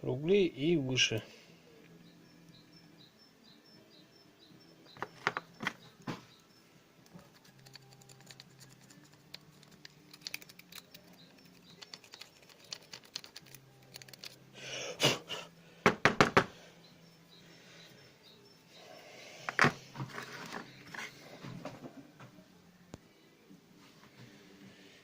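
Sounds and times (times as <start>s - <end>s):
small tools clicking on workbench: 7.4s - 14.4s
louder knocks: 15.9s - 16.5s.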